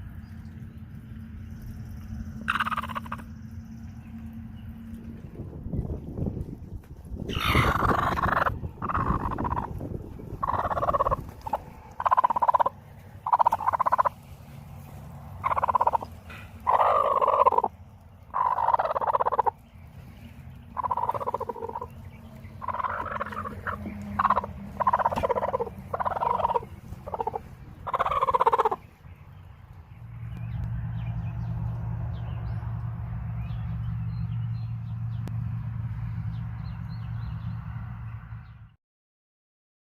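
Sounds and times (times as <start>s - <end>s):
steady low hum: 0.0s - 37.5s
short rattling animal calls: 2.4s - 3.3s, 7.3s - 9.7s, 10.4s - 14.1s, 15.4s - 17.7s, 18.3s - 19.6s, 20.7s - 21.9s, 22.6s - 28.8s.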